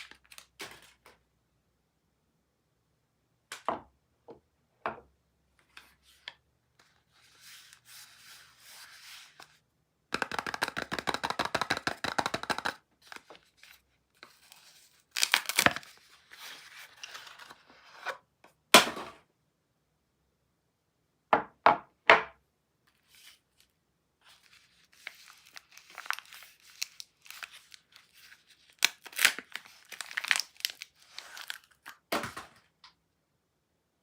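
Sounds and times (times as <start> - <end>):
packaging rustling and tearing: 14.3 - 17.6, 24.3 - 32.6.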